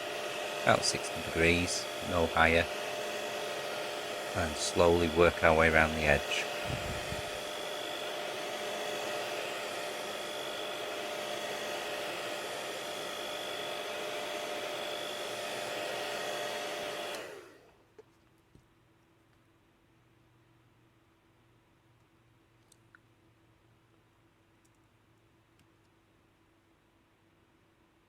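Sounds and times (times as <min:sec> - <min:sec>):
hot-air blower whining: 0:00.0 - 0:17.8.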